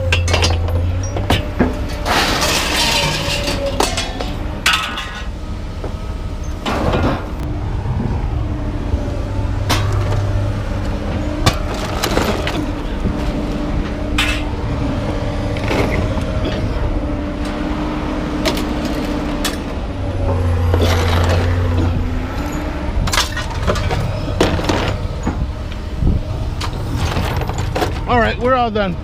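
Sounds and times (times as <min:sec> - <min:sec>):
scrap metal clanking and crashing: 0:00.0 - 0:07.4, 0:09.6 - 0:14.8, 0:18.4 - 0:25.5, 0:26.5 - 0:28.4
engine humming: 0:00.0 - 0:29.0.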